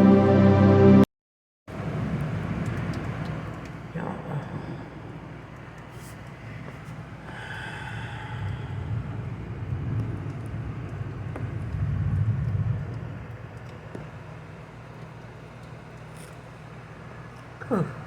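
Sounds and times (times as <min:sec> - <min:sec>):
thunder rumbling: 0:08.0 - 0:14.7.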